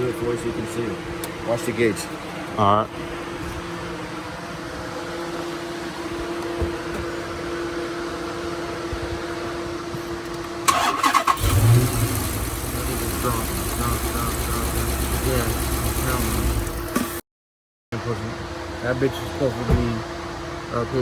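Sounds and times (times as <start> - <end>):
car engine running: 10.6 - 17.2, 18.0 - 21.0
starter cranking: 10.7 - 17.2.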